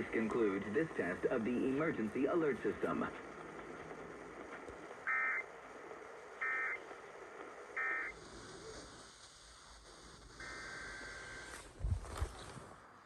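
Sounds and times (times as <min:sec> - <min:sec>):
radio reception hiss: 0:00.0 - 0:13.0
screeching digital data bursts: 0:05.0 - 0:05.5, 0:06.4 - 0:06.8.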